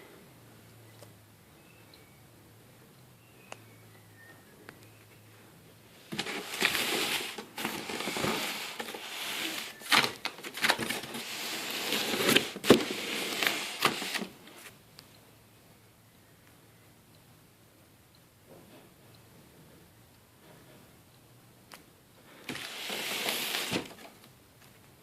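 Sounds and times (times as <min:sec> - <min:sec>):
packaging rustling and crinkling: 0:06.1 - 0:14.7, 0:22.5 - 0:24.2.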